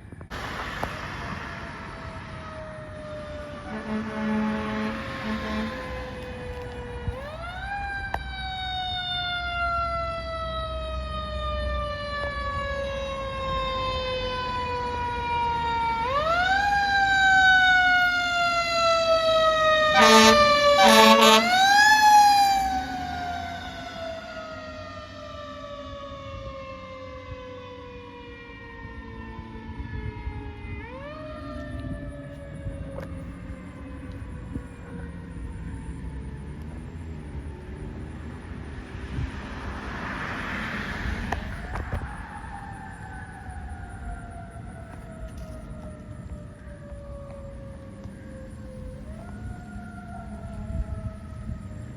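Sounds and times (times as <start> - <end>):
fire truck siren: 0.0 - 51.9
short horn blasts: 3.7 - 6.1, 19.9 - 21.7.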